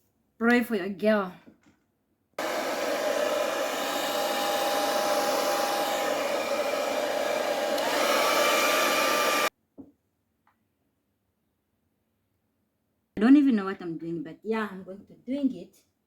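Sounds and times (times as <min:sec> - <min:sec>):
hair dryer blowing: 0:02.4 - 0:09.5.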